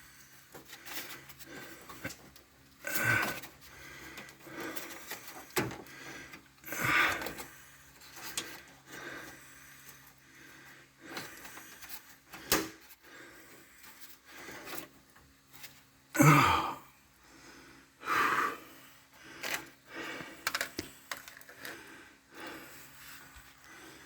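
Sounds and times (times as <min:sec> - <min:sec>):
man breathing heavily: 0:00.0 - 0:15.0, 0:16.2 - 0:24.0
clicks and knocks of handling: 0:20.4 - 0:21.8.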